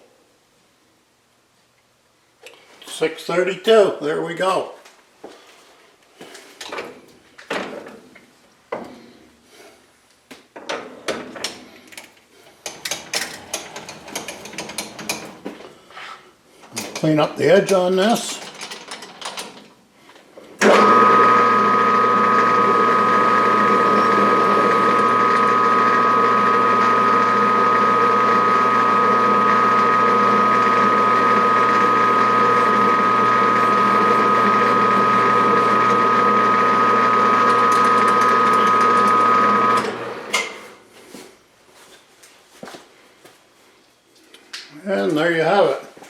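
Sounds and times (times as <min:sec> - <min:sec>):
machine tool motor whining: 0:20.6 - 0:40.4.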